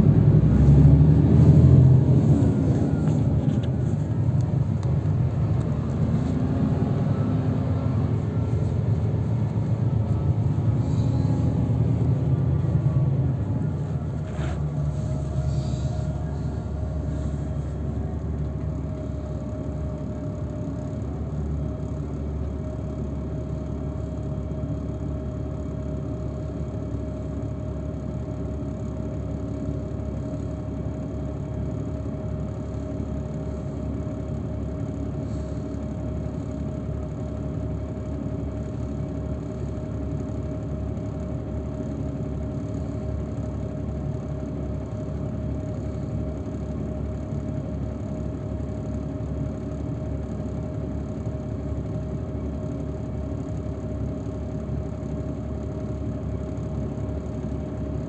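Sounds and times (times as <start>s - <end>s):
vehicle engine and road rumble: 0.0s - 58.0s
faint steady whine: 2.0s - 20.9s.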